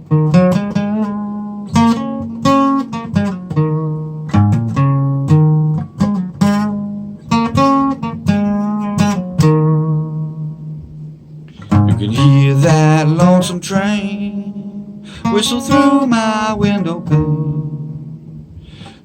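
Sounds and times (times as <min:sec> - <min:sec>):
acoustic guitar picking: 0:00.0 - 0:19.0
person singing: 0:11.6 - 0:18.2.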